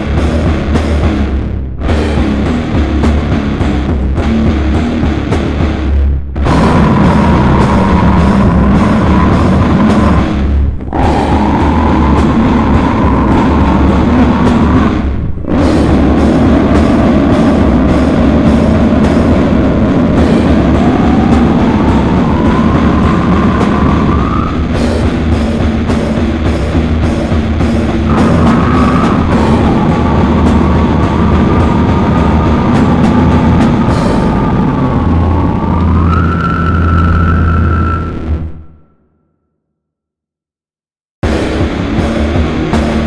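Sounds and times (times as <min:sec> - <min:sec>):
heavy distorted metal music: 0:00.0 - 0:38.8, 0:41.2 - 0:43.0
high wavering tone: 0:28.1 - 0:38.3.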